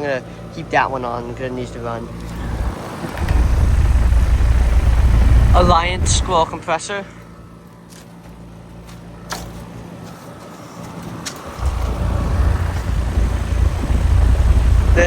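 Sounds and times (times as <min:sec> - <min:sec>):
fan air rushing: 0:00.0 - 0:15.0
compressor humming: 0:00.3 - 0:07.6, 0:11.5 - 0:15.0.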